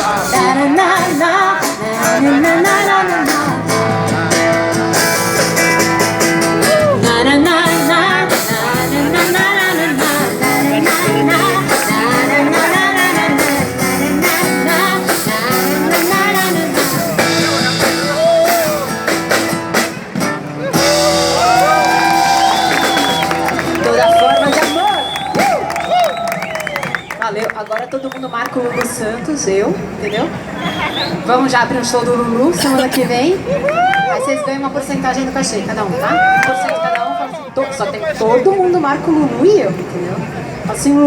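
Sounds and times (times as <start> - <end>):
strummed guitar chords: 0.0 - 25.2.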